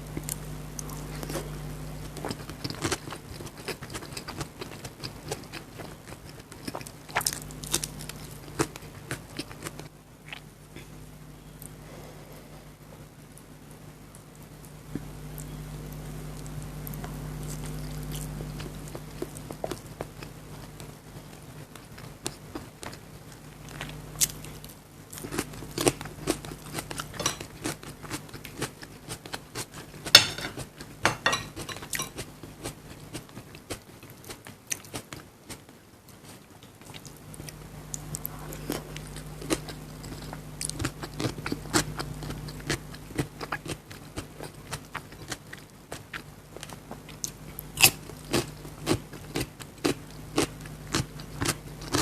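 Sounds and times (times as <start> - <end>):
chewing and crunchy bites: 0.1 - 10.5, 21.8 - 35.6, 36.2 - 52.0.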